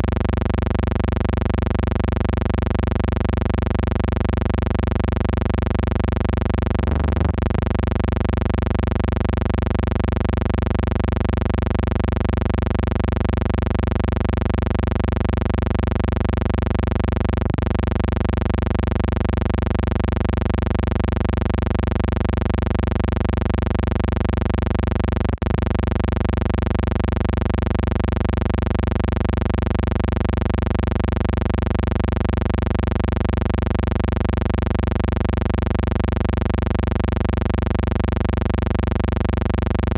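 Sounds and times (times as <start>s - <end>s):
electrical hum: 6.4s - 8.7s, 25.2s - 25.8s.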